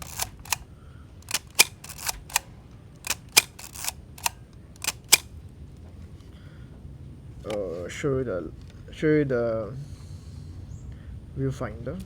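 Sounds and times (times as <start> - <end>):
film camera mechanical clicks: 0.0 - 5.4.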